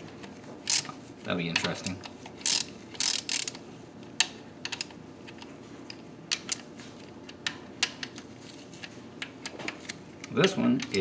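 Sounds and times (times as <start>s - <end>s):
hand ratchet clicks: 0.7s - 0.9s, 1.6s - 3.6s.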